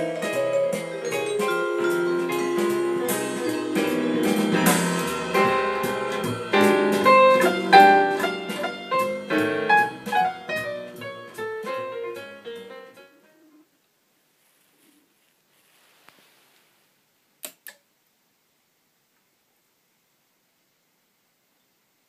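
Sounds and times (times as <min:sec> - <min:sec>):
piano notes: 0:00.0 - 0:13.5.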